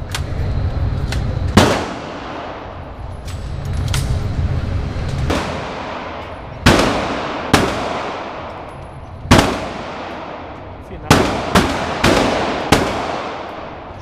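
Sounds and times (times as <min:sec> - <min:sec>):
pistol shots with echo: 0:01.6 - 0:02.8, 0:05.3 - 0:08.7, 0:09.3 - 0:14.0.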